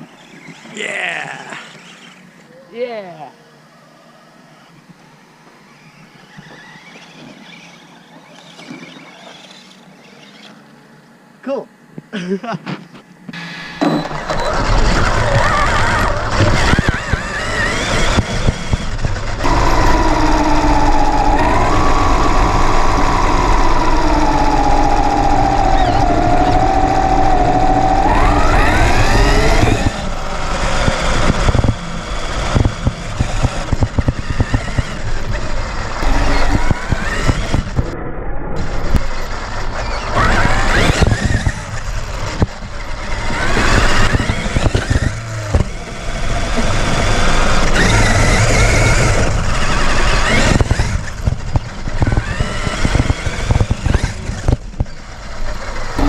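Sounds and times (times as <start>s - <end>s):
electric motor whining: 4.7s - 10.8s, 13.3s - 56.0s
toy truck rattling on rough ground: 13.9s - 20.6s, 21.5s - 37.7s, 39.3s - 56.0s.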